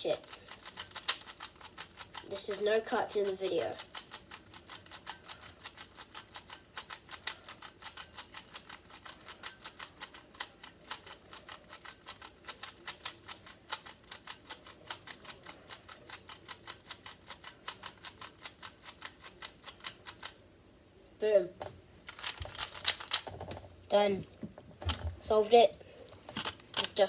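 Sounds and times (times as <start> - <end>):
puzzle cube clicking: 0.1 - 2.6, 3.6 - 20.4, 22.1 - 23.3, 26.3 - 27.0.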